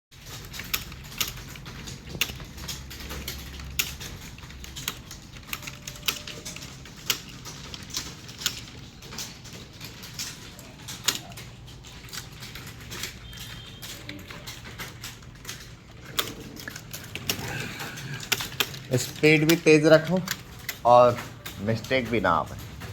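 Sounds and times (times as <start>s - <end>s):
keyboard typing: 0.1s - 22.9s.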